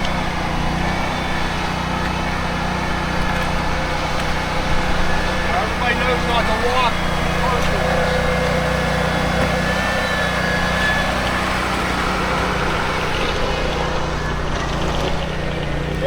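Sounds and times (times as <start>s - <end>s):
engine droning steadily: 0.0s - 16.0s.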